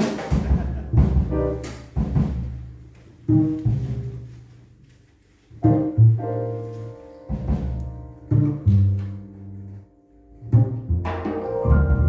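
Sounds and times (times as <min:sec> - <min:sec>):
jazz trio playing: 0:00.0 - 0:12.0
sustained piano chords: 0:05.7 - 0:12.0.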